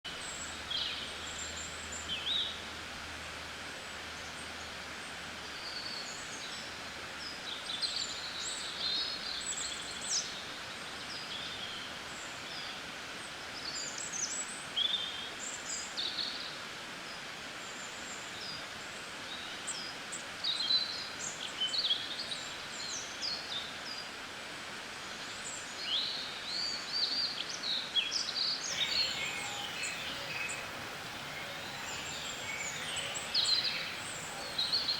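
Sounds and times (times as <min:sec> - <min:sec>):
background hiss: 0:19.7 - 0:34.9
songbirds chirping and trilling: 0:28.2 - 0:34.9.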